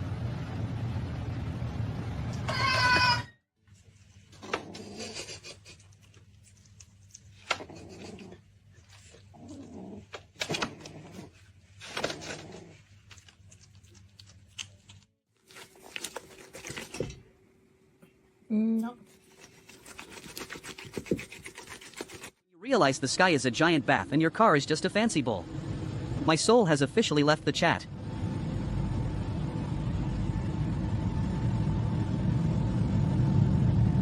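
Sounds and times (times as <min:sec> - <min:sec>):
pet animal vocalizing: 0:07.4 - 0:12.9
steady low hum: 0:23.0 - 0:34.0.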